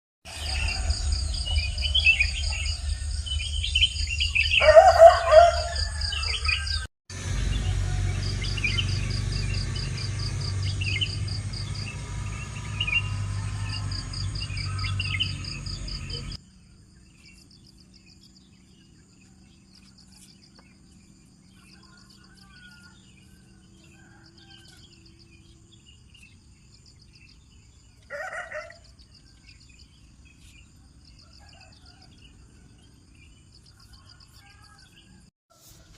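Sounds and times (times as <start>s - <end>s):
low rumble: 0.3s - 4.6s
birds chirping: 0.3s - 35.3s
rooster crowing: 4.4s - 6.9s, 21.7s - 25.0s, 28.1s - 28.8s, 31.2s - 32.2s.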